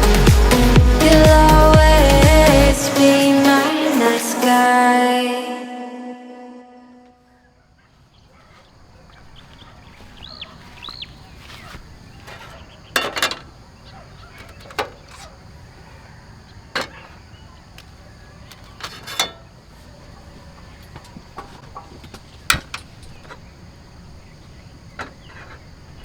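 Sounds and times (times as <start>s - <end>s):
outdoor background noise: 0.0s - 26.0s
bird chirps: 7.2s - 13.0s.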